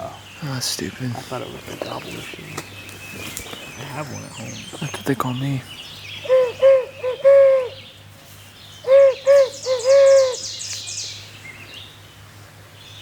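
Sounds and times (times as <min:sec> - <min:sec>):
owl hooting: 0:06.2 - 0:07.9, 0:08.8 - 0:11.2.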